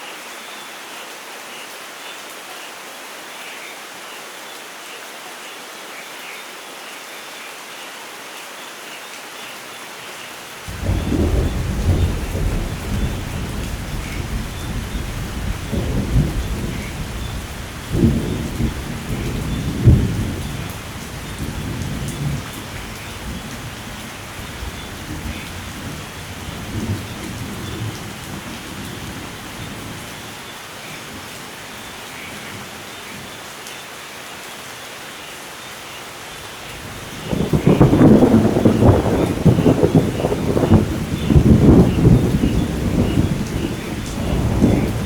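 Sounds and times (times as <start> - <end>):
steady rain: 0.0 - 45.0
sharp thunder cracks: 10.7 - 20.7, 37.2 - 45.0
rolling thunder: 10.7 - 30.0, 36.8 - 45.0.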